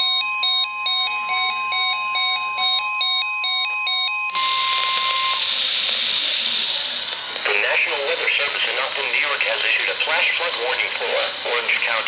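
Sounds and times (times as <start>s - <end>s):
two-pitch alert alarm beeping: 0.0s - 5.4s
steady warning alarm tone: 0.0s - 5.5s
radio static hiss: 4.4s - 12.0s.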